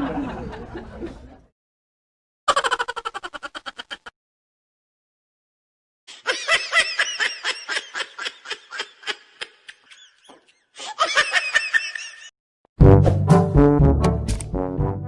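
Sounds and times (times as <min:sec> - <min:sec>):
high-pitched laughing: 0:02.5 - 0:04.1, 0:06.1 - 0:12.3.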